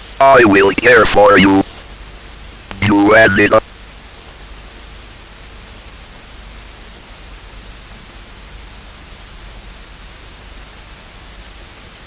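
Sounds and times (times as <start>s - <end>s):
faint low hum: 0.0s - 1.8s, 2.7s - 3.6s
static hiss: 0.0s - 1.9s, 2.7s - 3.6s.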